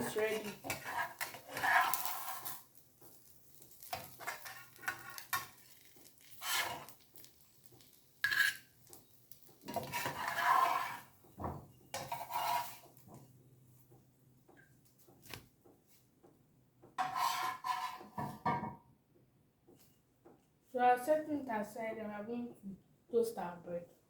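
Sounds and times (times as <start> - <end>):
metal utensil scraping a frying pan: 0.0 - 11.2, 11.8 - 13.2, 17.0 - 18.6.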